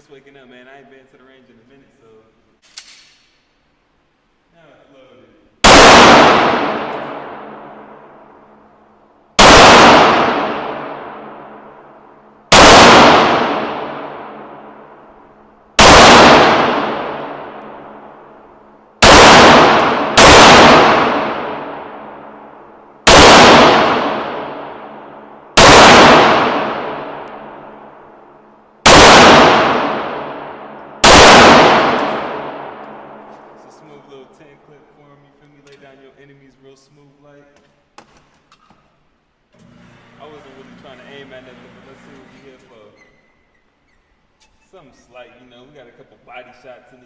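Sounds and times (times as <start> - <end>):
rifle gunshots echoing: 5.6 - 8.6, 9.4 - 34.2.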